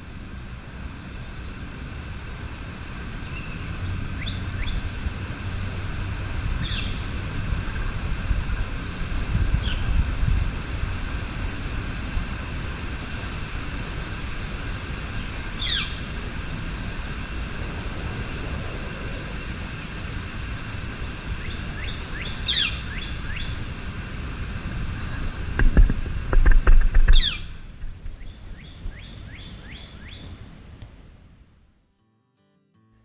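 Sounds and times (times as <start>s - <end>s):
river rushing: 0.0s - 30.8s
wind in trees: 0.0s - 31.8s
sharp falling bird calls: 25.5s - 30.2s.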